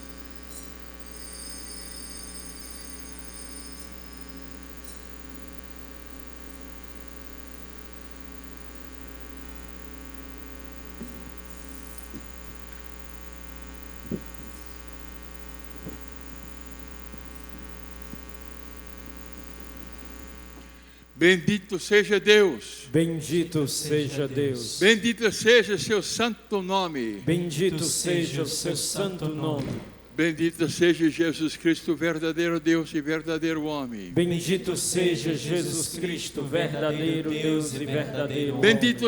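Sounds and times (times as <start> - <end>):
faint high ringing: 0.0 - 6.7
low electrical hum: 0.0 - 39.0.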